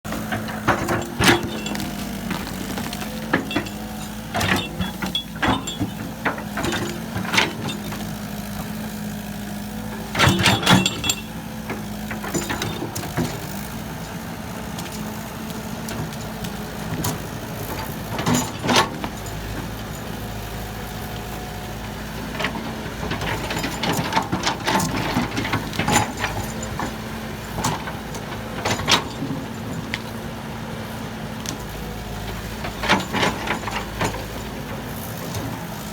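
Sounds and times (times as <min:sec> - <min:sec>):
metallic clanks and knocks: 0:00.1 - 0:08.8, 0:10.2 - 0:13.5, 0:22.4 - 0:30.0
diesel engine running: 0:00.1 - 0:35.9.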